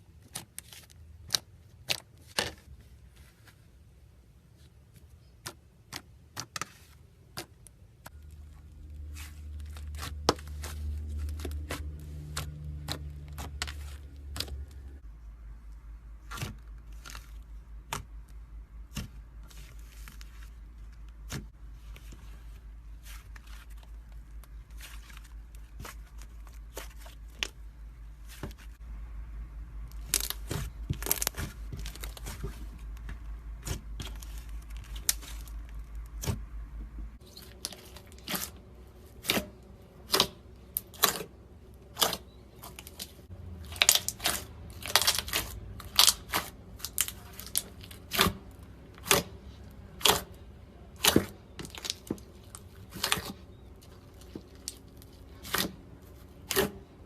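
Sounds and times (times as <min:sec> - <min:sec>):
low hum: 0:08.1 - 0:40.6.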